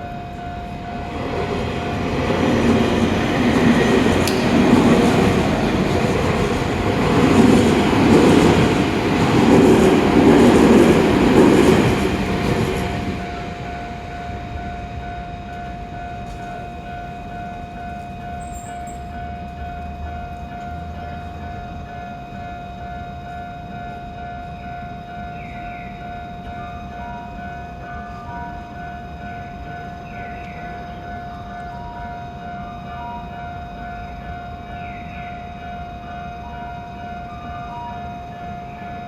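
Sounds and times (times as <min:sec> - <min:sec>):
train wheels rumbling: 0:00.0 - 0:21.8
crossing warning bell ringing: 0:00.0 - 0:39.0.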